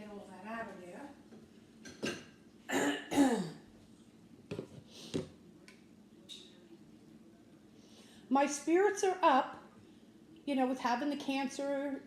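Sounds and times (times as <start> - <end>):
woman coughing: 2.7 - 3.6.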